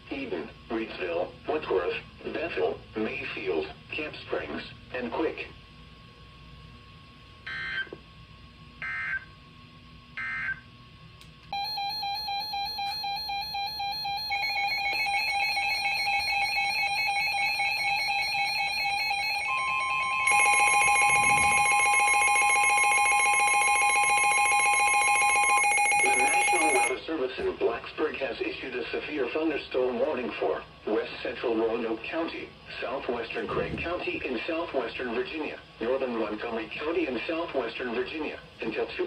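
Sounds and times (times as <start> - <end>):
warbling electronic alert tone: 11.6 - 26.9
steady weather radio alert tone: 12.9 - 27.0
digital data bursts: 20.2 - 26.9.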